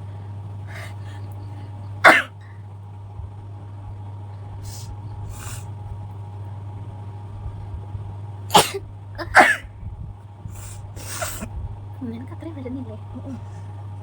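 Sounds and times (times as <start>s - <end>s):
woman sneezing: 2.1s - 2.3s, 8.5s - 9.7s
short sniffs: 4.6s - 5.7s, 10.5s - 11.5s.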